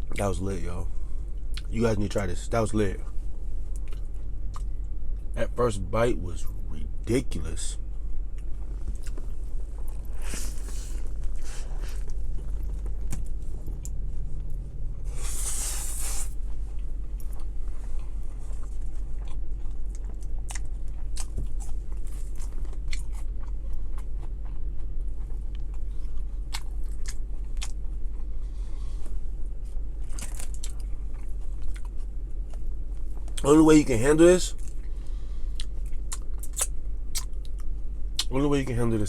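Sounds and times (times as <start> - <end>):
steady low hum: 0.0 - 39.0
close-up chewing: 3.8 - 5.3, 8.3 - 33.4, 34.5 - 38.3.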